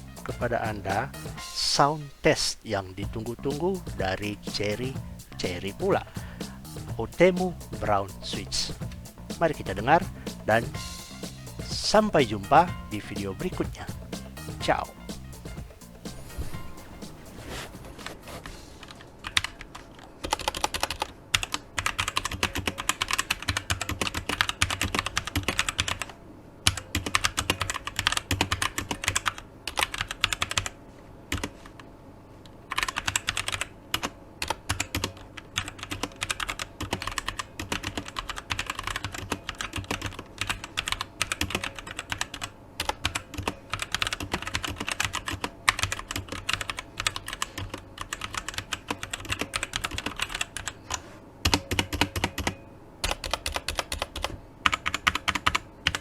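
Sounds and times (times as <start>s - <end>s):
mechanical keyboard typing: 18.8s - 31.8s, 32.7s - 56.0s.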